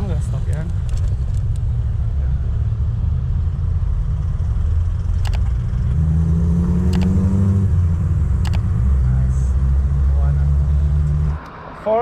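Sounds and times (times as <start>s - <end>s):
road rumble: 0.0s - 12.0s
vehicle engine rising in pitch: 1.3s - 11.8s
sharp clicks: 5.2s - 5.6s, 6.8s - 7.2s, 8.4s - 8.7s.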